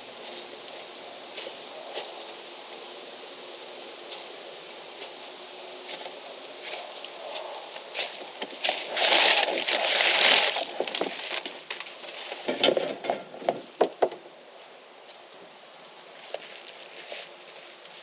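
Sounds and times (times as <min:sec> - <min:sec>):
sharp metallic clinks and knocks: 0:12.4 - 0:13.5.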